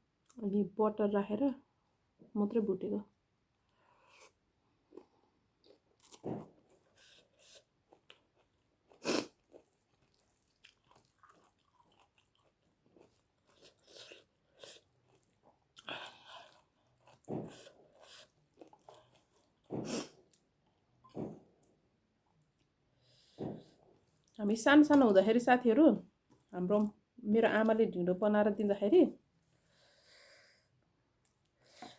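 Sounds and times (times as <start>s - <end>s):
person chewing and eating: 3.7s - 24.4s.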